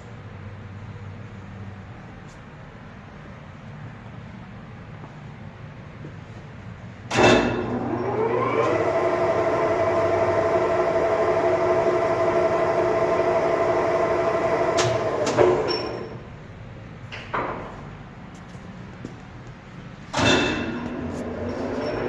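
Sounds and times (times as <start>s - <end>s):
lathe gear whine: 7.7s - 16.2s
lathe spindle clunks: 14.2s - 16.1s.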